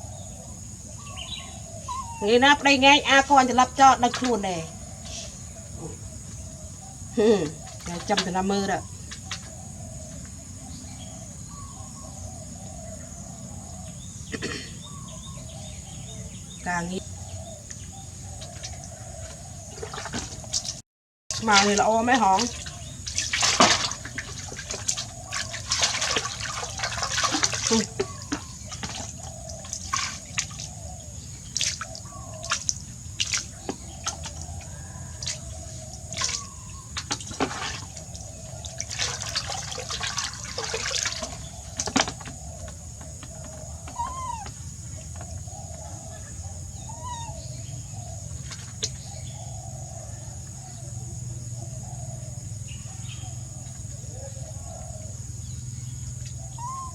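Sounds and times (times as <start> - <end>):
bath water splashing: 19.7 - 30.8, 31.4 - 42.4.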